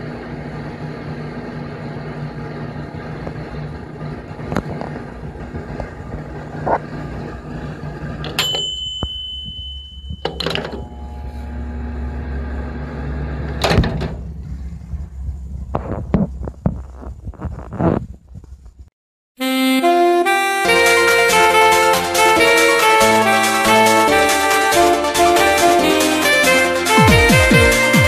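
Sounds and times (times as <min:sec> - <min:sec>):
microwave oven humming: 0:00.0 - 0:17.9.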